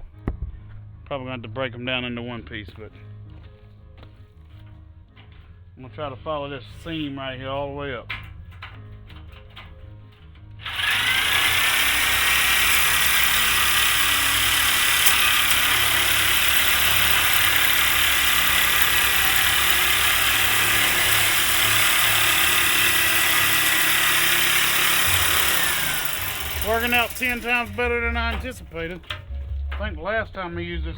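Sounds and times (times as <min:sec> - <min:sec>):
cutter motor high whine: 0:10.6 - 0:28.6.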